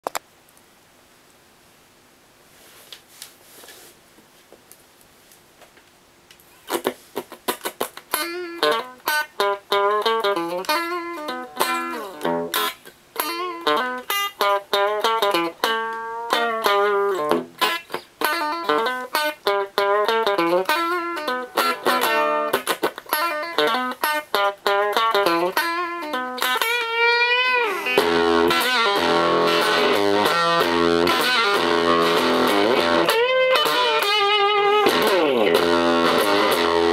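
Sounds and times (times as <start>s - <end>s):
electric guitar lead lines: 7.5s - 36.9s.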